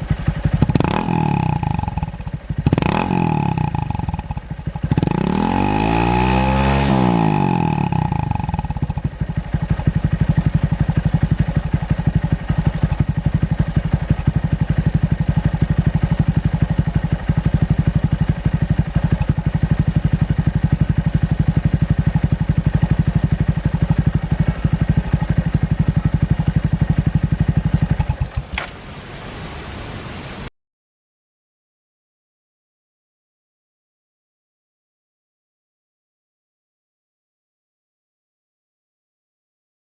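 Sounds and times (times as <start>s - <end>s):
motorcycle engine revving and idling: 0.0s - 28.7s.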